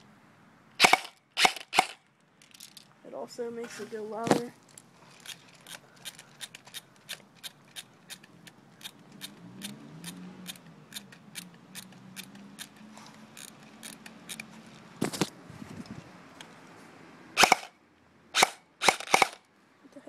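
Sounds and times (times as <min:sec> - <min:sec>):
airsoft rifle shots: 0:00.8 - 0:02.0, 0:17.4 - 0:17.7, 0:18.4 - 0:19.4
mechanical clicks of rifle parts: 0:00.8 - 0:02.9, 0:04.6 - 0:14.8, 0:18.4 - 0:19.5.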